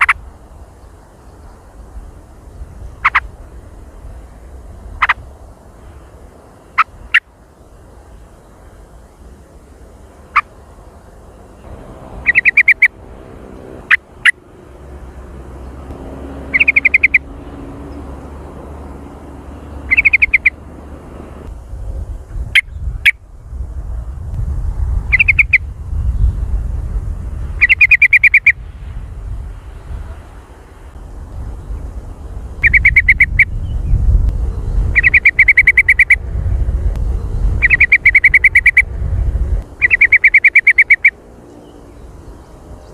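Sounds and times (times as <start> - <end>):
bird chattering calls: 0.0 - 0.2, 2.9 - 3.3, 5.0 - 5.2, 6.7 - 7.3, 12.1 - 13.0, 13.8 - 14.4, 16.4 - 17.3, 19.8 - 20.6, 25.1 - 25.6, 27.6 - 28.6, 32.6 - 33.6, 34.9 - 36.2, 37.6 - 38.9, 39.8 - 41.2
sharp bird chips: 11.6 - 13.0, 16.4 - 17.3, 19.8 - 20.6, 25.1 - 25.6, 27.6 - 28.6, 32.6 - 33.7, 35.0 - 36.2, 37.6 - 38.8, 39.8 - 41.2.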